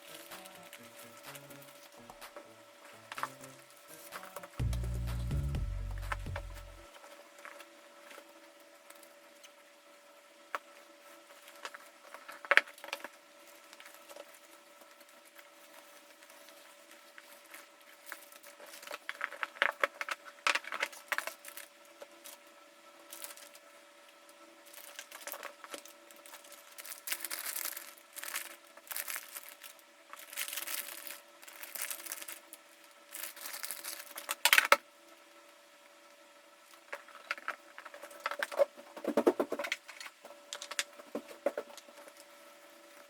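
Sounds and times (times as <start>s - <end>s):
plastic crackle: 0.0s - 1.9s, 23.1s - 23.7s, 24.6s - 34.8s
plastic sleeves crinkling: 0.0s - 1.9s, 24.7s - 34.4s.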